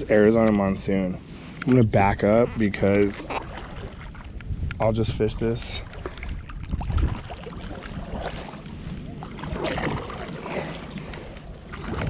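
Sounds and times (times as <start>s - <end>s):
wind rumbling over microphone: 1.8s - 12.0s
water lapping and splashing: 2.6s - 12.0s.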